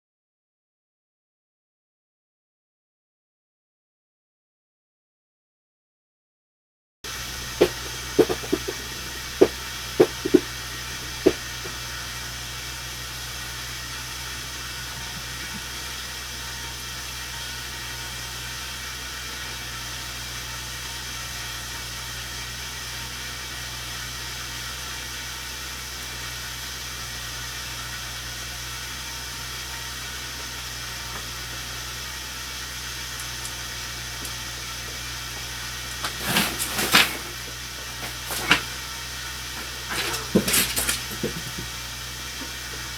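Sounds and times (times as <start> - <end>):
rumbling noise with hiss: 7.1 - 18.3.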